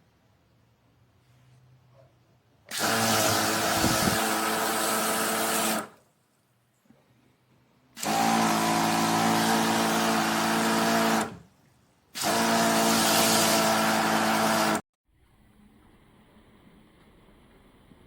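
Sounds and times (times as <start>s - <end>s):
pressure washer pump running: 2.7s - 6.0s, 8.0s - 11.5s, 12.2s - 14.8s.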